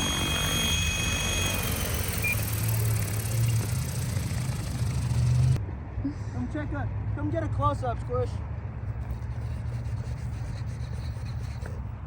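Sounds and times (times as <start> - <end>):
rc helicopter motor whine: 0.0 - 5.6
rotor hum: 0.0 - 5.6.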